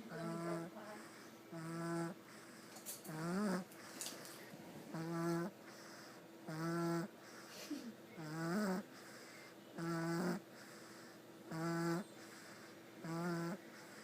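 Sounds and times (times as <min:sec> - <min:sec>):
baby snoring: 0:01.5 - 0:02.2, 0:03.1 - 0:03.7, 0:04.9 - 0:05.5, 0:06.5 - 0:07.1, 0:08.2 - 0:14.0.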